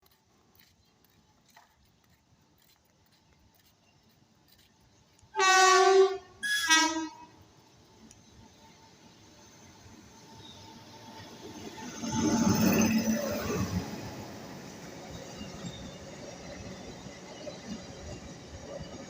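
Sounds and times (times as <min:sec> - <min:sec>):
locomotive horn blasts: 0:05.4 - 0:07.3.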